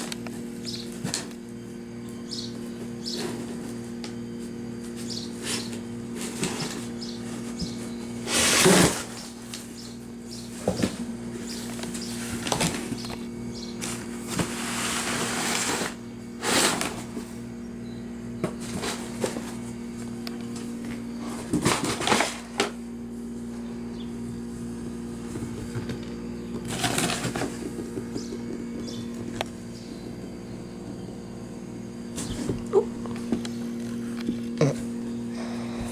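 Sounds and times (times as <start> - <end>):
steady low hum: 0.0 - 35.9
cardboard rustling and scratching: 3.1 - 9.7, 10.4 - 13.0, 21.2 - 22.4, 25.2 - 33.8.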